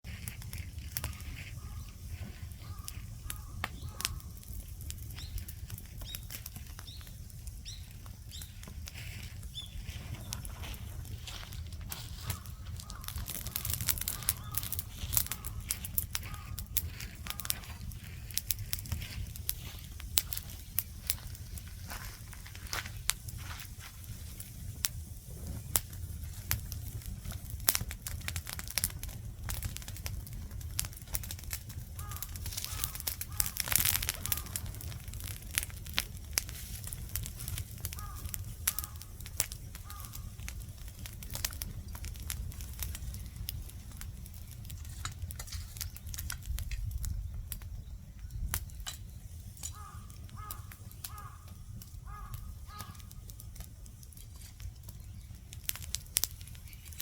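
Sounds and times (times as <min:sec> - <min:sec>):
campfire crackling and popping: 0:00.0 - 0:57.0
bird calling: 0:01.0 - 0:04.4, 0:11.2 - 0:18.2, 0:32.0 - 0:34.8, 0:37.9 - 0:39.1, 0:39.8 - 0:40.3, 0:49.7 - 0:53.1.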